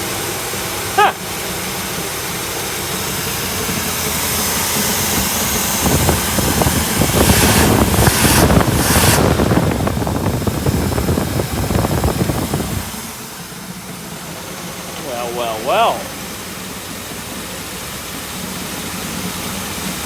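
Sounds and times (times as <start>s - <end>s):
hiss: 0.0s - 13.7s
car engine running: 0.0s - 20.0s.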